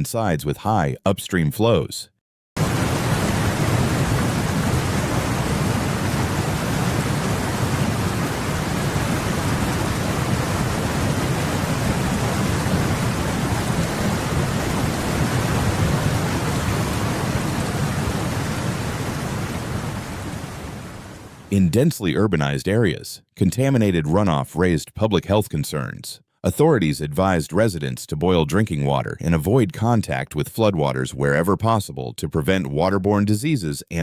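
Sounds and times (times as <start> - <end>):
heavy rain: 2.6 - 21.5.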